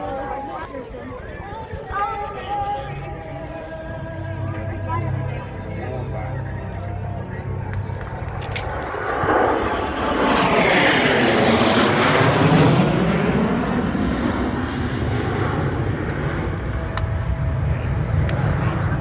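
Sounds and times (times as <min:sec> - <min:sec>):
fighter jet passing: 0:07.3 - 0:19.0.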